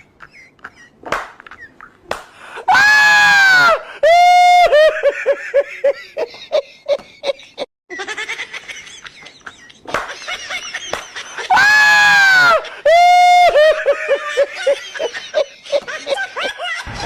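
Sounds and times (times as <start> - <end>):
high-pitched shrieking laughter: 11.2 - 17.0.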